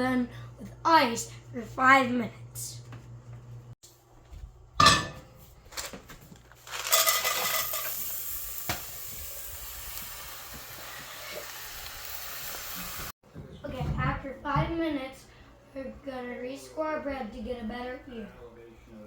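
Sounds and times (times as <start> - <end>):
cookware knock: 4.8 - 5.2
ice hissing into steam: 6.7 - 13.1.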